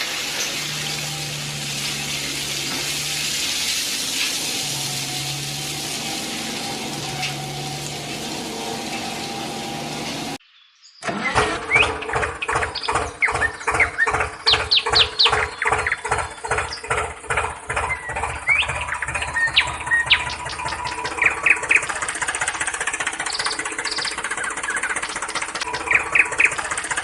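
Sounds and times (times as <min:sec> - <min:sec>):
heavy diesel engine chugging: 0:00.0 - 0:10.4, 0:11.1 - 0:27.0.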